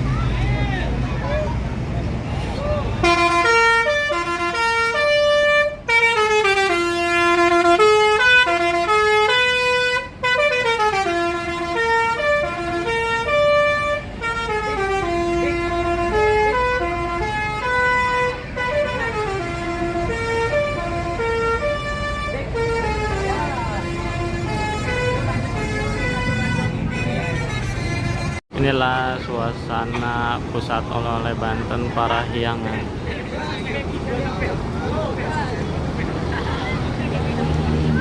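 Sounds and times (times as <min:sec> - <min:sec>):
musical bus air horn tune: 0:03.0 - 0:28.4.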